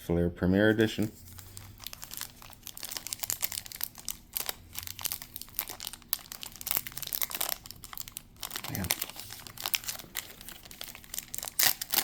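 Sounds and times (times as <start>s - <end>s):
wrapper crinkling and tearing: 1.1s - 12.0s.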